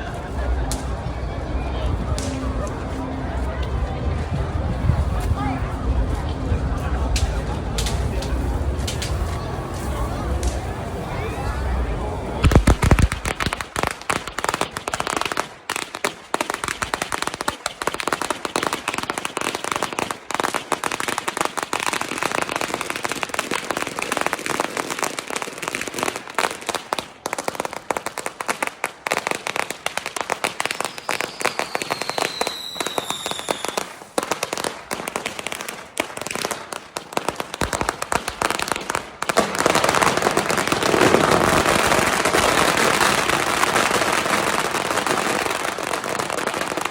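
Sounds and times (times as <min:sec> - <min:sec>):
firecrackers popping: 0:00.0 - 0:46.9
falling whistle: 0:30.9 - 0:33.8.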